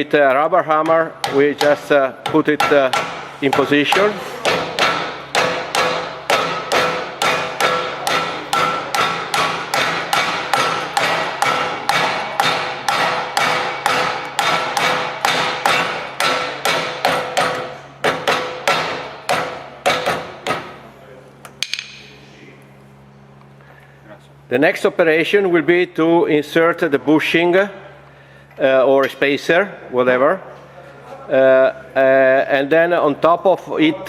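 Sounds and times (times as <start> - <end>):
hammer tapping bearing: 0.2 - 20.8.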